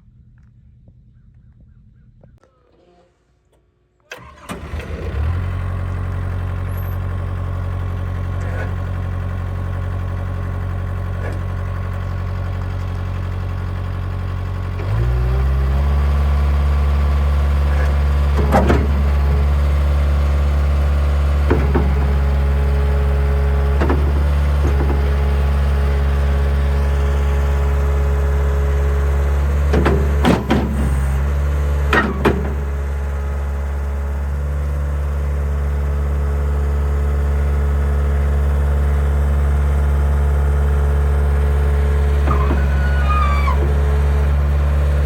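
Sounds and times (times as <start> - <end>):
diesel engine running: 4.1 - 45.0
sharp clunks: 17.8 - 19.7, 21.4 - 22.4, 29.7 - 31.3, 31.9 - 32.8, 42.2 - 44.0.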